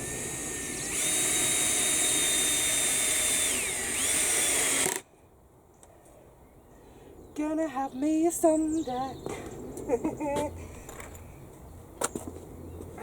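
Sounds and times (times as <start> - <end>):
electric drill whining: 0.0 - 5.0.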